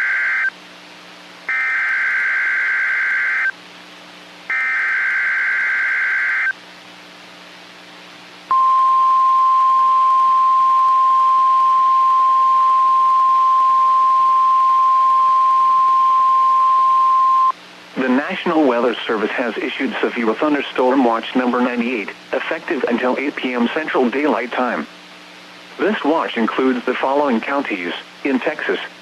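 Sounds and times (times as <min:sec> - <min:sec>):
screeching digital data bursts: 0:01.5 - 0:03.5, 0:04.5 - 0:06.6.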